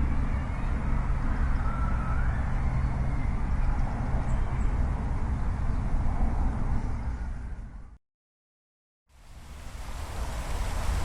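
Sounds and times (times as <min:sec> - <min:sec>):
even hiss: 0:09.2 - 0:11.0.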